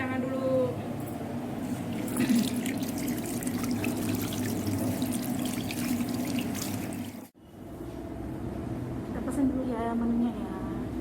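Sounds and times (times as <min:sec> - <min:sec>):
hands washing under water: 0:01.8 - 0:07.3
tap water running: 0:01.8 - 0:07.4.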